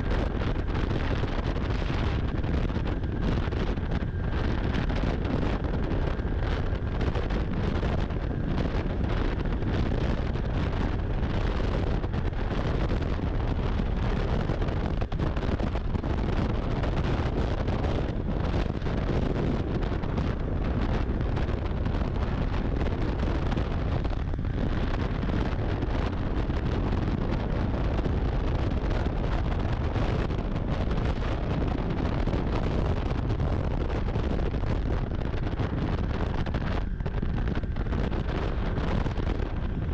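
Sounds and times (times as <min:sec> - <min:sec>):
snowmobile engine rumble: 0:00.0 - 0:39.9
wind buffeting microphone: 0:00.0 - 0:39.9.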